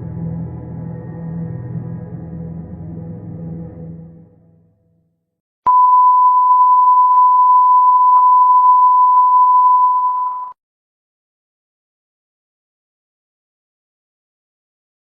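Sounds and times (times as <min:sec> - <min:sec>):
high-pitched electronic beep: 0:05.7 - 0:10.6.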